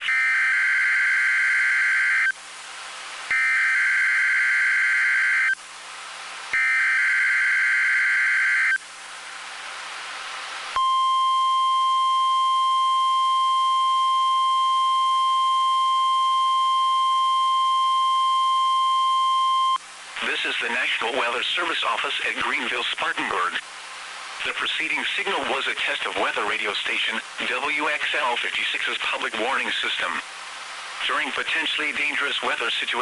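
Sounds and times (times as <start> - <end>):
steady warning alarm tone: 3.3 - 5.6, 6.6 - 8.8
radio hiss: 19.6 - 33.0.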